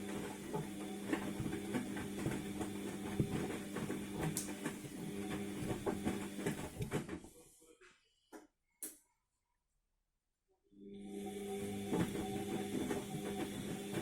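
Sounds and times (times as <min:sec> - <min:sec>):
washing machine motor hum: 0:00.0 - 0:07.4, 0:10.8 - 0:14.0.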